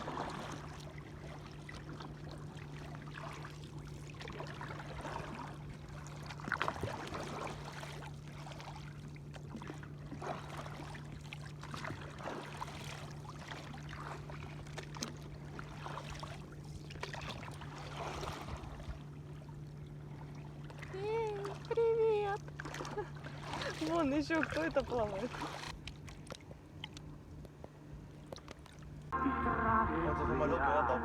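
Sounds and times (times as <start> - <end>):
water lapping against kayak hull: 0.0 - 29.2
steady low hum: 25.4 - 31.0.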